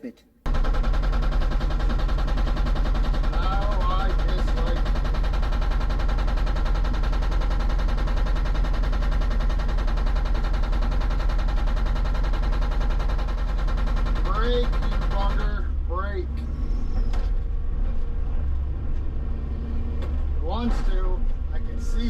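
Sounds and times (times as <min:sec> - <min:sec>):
hydraulic breaker pounding rock: 0:00.5 - 0:15.6.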